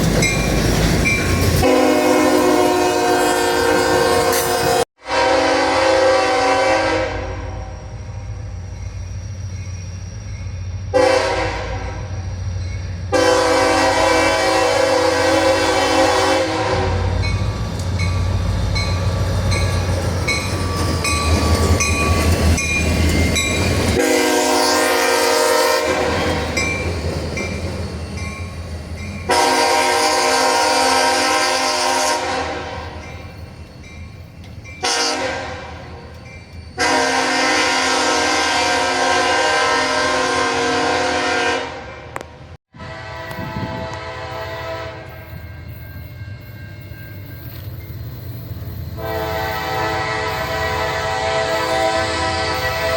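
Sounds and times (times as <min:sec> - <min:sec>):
train clattering over rails: 0:00.0 - 0:02.6, 0:16.9 - 0:31.1
locomotive air horn blasts: 0:01.6 - 0:07.8, 0:10.9 - 0:12.1, 0:13.1 - 0:17.2, 0:24.0 - 0:26.5, 0:29.3 - 0:33.0, 0:34.8 - 0:36.0, 0:36.8 - 0:45.2, 0:49.0 - 0:52.9.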